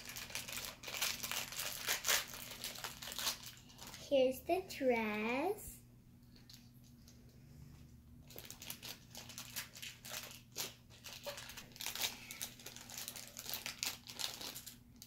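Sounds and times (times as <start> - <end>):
plastic packaging crinkling: 0.0 - 4.1, 8.2 - 15.0.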